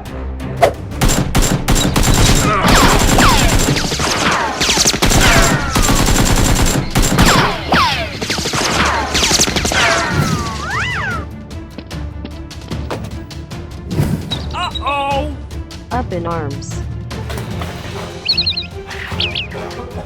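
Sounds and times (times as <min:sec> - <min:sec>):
rapid gunfire: 0:01.0 - 0:10.7.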